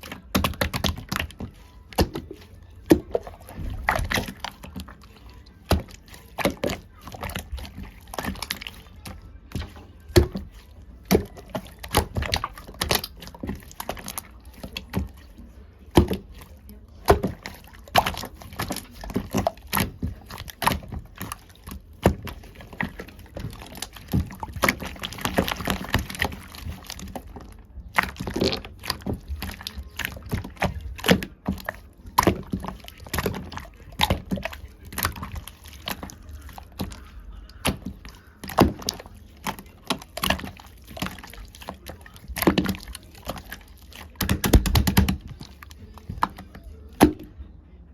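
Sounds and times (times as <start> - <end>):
slime squelching by hand: 0.0 - 47.4.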